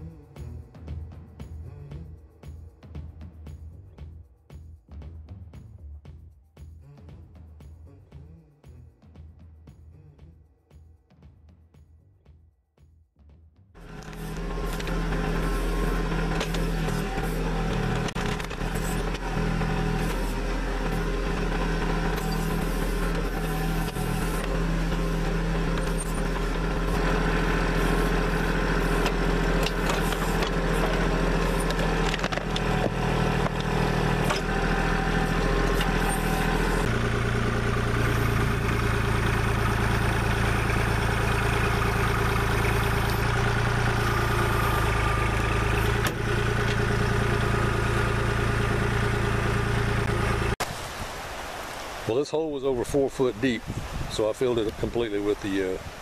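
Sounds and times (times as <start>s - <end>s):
diesel tractor engine running: 13.8s - 52.1s.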